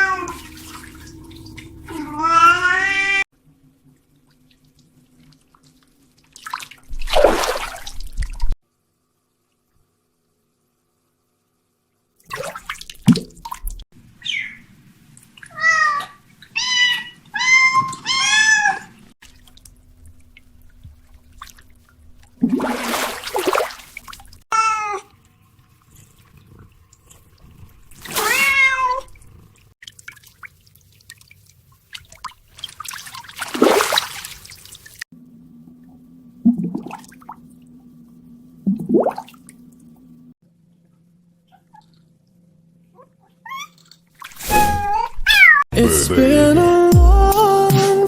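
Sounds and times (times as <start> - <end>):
kitten meowing: 0.0 - 0.4, 2.0 - 3.2.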